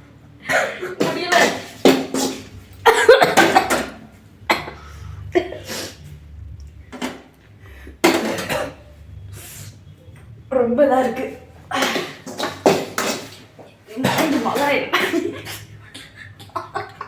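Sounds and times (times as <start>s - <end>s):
person coughing: 0.4s - 1.6s, 2.2s - 3.9s, 4.5s - 6.0s, 8.1s - 8.8s
metal utensils clattering on pan: 11.8s - 13.4s.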